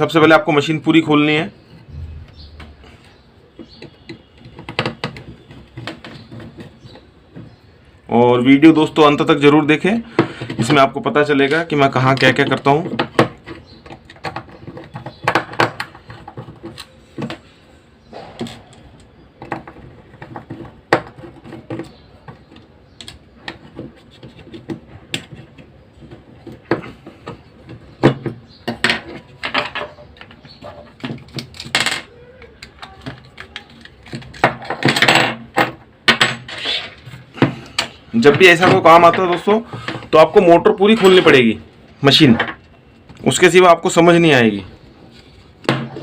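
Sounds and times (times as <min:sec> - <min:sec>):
plastic parts clicking and tapping: 0:02.4 - 0:07.6, 0:10.1 - 0:17.5, 0:18.4 - 0:41.4.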